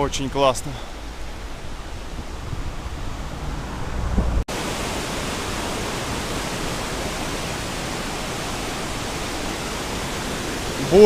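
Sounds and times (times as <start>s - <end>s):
wind buffeting microphone: 1.0s - 4.5s
turbulent river rushing: 4.5s - 11.0s.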